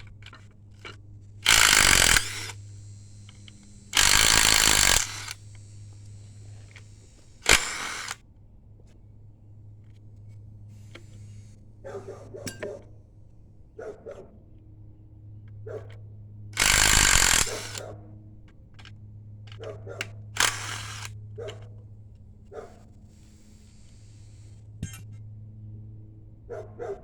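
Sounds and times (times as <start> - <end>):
steady low hum: 0.0 - 27.0
impact wrench burst: 1.4 - 8.2, 16.6 - 17.8, 20.4 - 21.1.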